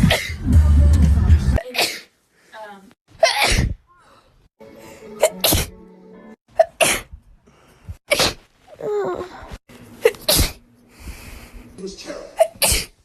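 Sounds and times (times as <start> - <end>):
background music: 0.0 - 1.6, 4.6 - 6.4
woman sneezing: 1.6 - 2.1, 3.2 - 3.8.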